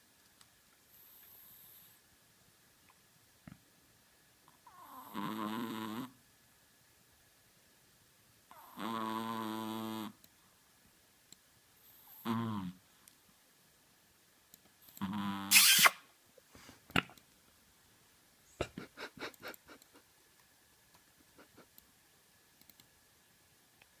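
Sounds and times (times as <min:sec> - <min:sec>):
dog snoring: 0:04.6 - 0:06.2, 0:08.5 - 0:10.2, 0:11.9 - 0:12.8, 0:15.0 - 0:15.5
clicks: 0:22.6 - 0:22.9.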